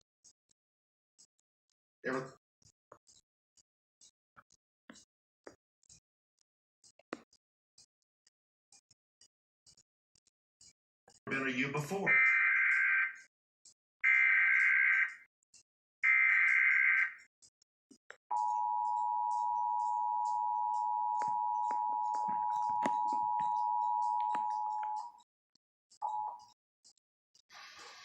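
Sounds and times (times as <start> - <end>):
shrill warbling data bursts: 16.0 - 17.2
two-tone alert signal: 18.3 - 25.2, 26.0 - 26.5.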